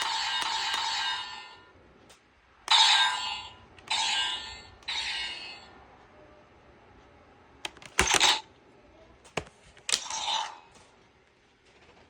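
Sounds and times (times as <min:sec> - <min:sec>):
plastic toys clicking and clattering: 0:07.7 - 0:08.5, 0:09.3 - 0:10.6.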